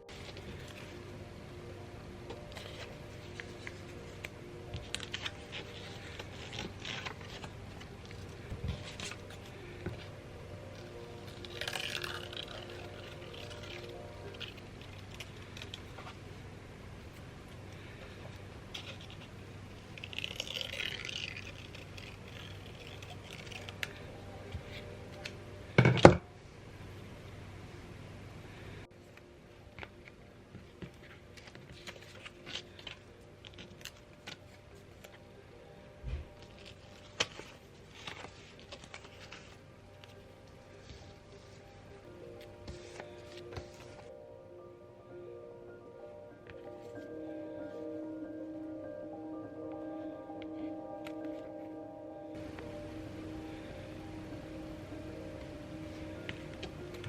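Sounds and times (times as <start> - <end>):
hands handling small objects: 0.0 - 16.4, 17.0 - 26.1, 29.2 - 44.2
faint background music: 0.0 - 57.0.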